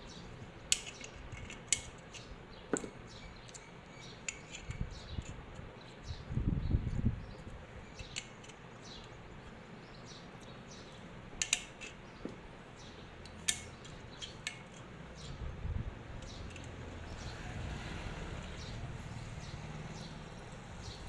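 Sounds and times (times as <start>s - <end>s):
magnets clicking onto metal: 0.7s - 5.4s, 11.4s - 12.0s, 13.2s - 14.9s.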